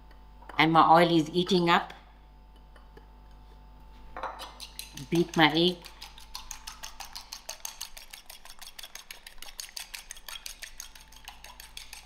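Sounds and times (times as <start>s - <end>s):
utensil clicking against bowl: 4.4s - 12.0s.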